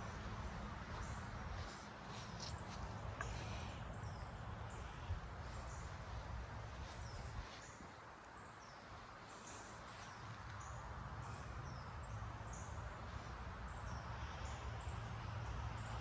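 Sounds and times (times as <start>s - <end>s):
low outdoor rumble: 0.0s - 8.0s.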